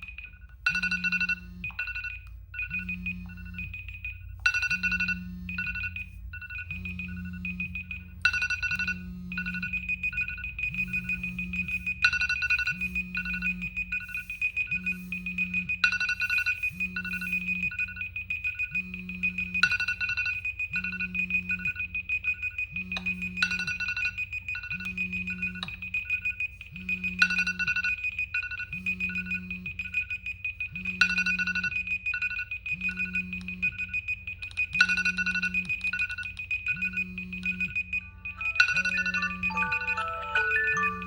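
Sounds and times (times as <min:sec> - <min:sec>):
phone alarm melody: 0:00.0 - 0:41.0.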